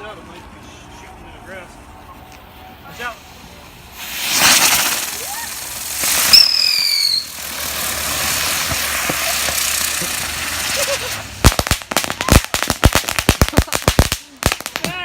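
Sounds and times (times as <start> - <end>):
firework spraying hiss: 2.8 - 15.0
firework sharp cracks: 3.9 - 15.0
firework falling whistle: 4.0 - 12.5.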